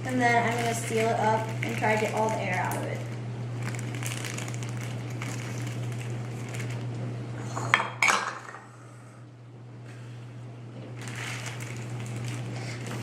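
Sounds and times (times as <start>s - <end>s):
plastic bag being handled: 0.0s - 7.0s, 11.0s - 13.0s
steady low hum: 0.0s - 13.0s.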